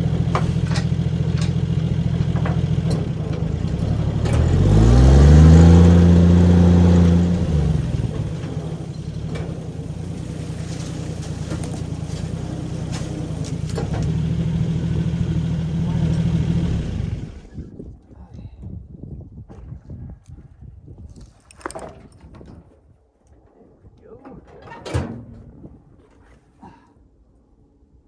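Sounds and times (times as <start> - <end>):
engine idling and revving: 0.0 - 17.7.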